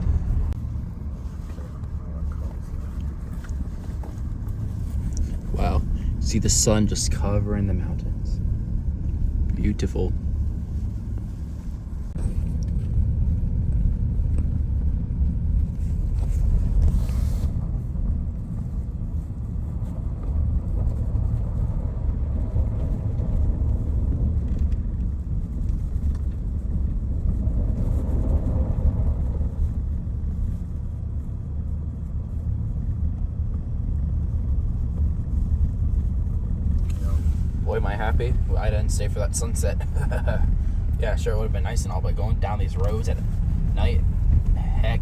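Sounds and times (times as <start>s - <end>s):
tyres on slushy road: 0.0s - 14.2s, 35.0s - 45.0s
car engine rumble: 0.0s - 45.0s.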